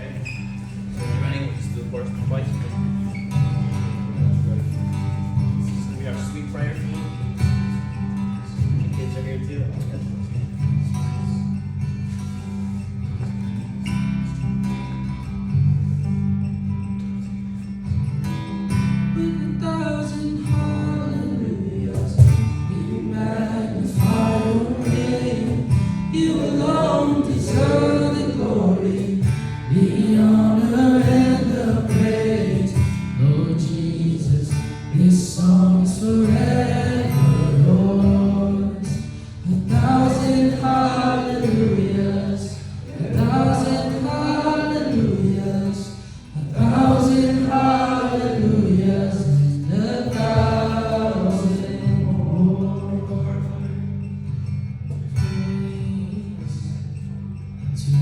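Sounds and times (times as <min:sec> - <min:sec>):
strummed acoustic guitar: 0:00.0 - 0:58.0
group singing: 0:19.2 - 0:54.1.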